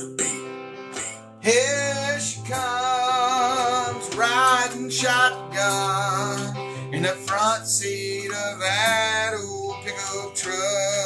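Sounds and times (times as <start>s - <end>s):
person singing with vibrato: 1.4s - 11.0s.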